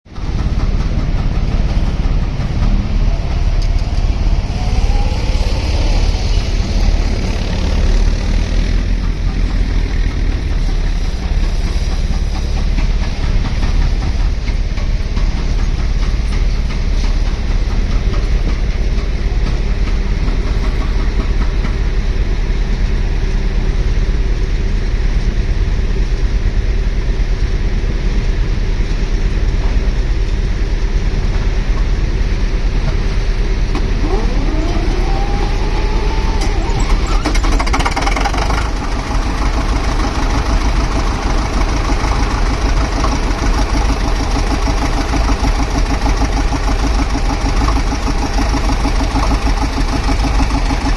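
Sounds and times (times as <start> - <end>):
compressor engine rumbling: 0.1 - 50.9
rising whine: 1.4 - 9.0, 32.6 - 44.1.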